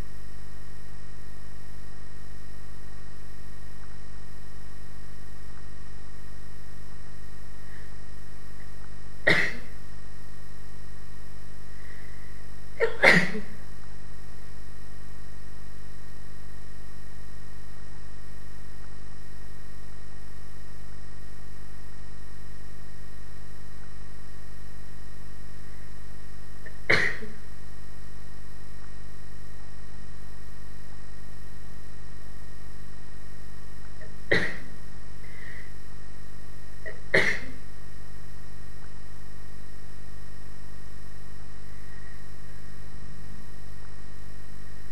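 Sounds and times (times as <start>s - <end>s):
steady background hum: 0.0s - 44.9s
person sneezing: 9.3s - 9.7s, 12.8s - 13.6s, 26.7s - 27.4s, 34.3s - 34.7s, 36.9s - 37.6s.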